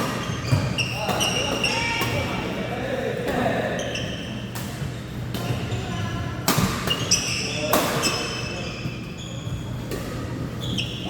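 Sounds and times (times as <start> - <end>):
court shoes squeaking: 0.0 - 2.2, 3.4 - 11.0.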